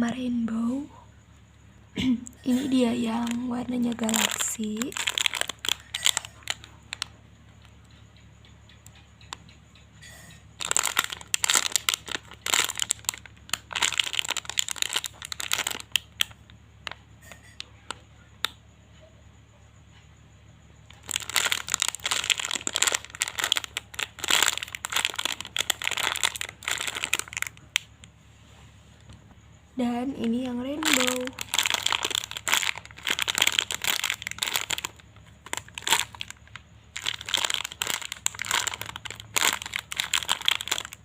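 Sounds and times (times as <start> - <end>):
plastic wrapping crinkling: 2.5 - 7.7, 10.0 - 17.6, 20.9 - 27.9, 29.8 - 41.0.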